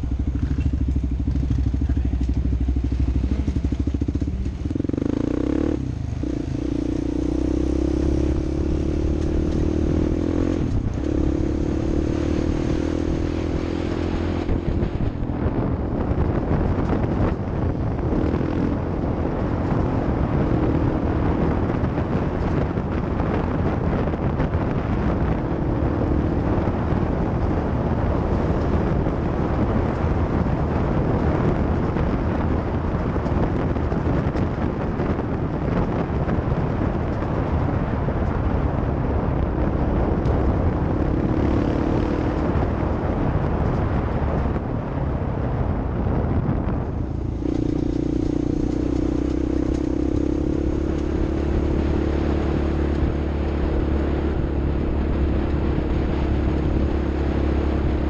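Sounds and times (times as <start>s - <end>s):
vehicle engine driving off-road: 0.0s - 58.0s
wind and ground noise rumble: 0.0s - 58.0s.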